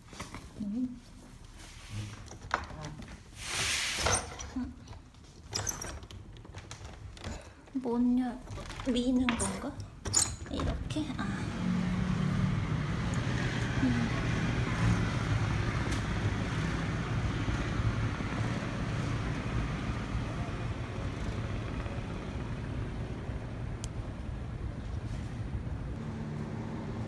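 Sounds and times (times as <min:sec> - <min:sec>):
engine running with low hum: 0:11.1 - 0:27.0.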